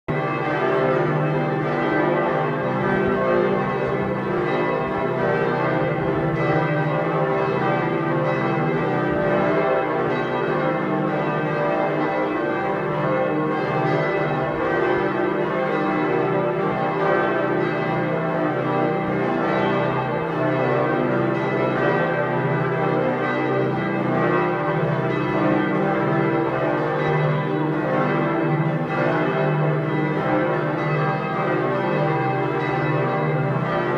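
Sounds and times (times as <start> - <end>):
church bells pealing: 0.1 - 33.9.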